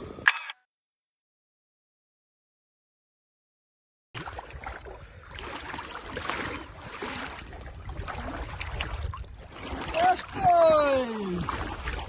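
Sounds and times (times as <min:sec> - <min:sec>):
water lapping and trickling: 0:04.2 - 0:12.0
wind rumble on microphone: 0:04.2 - 0:12.0.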